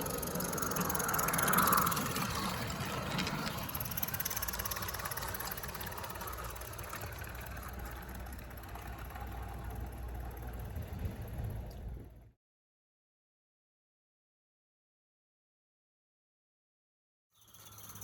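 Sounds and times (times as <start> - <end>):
model steam locomotive chuffing: 0.0 - 11.5.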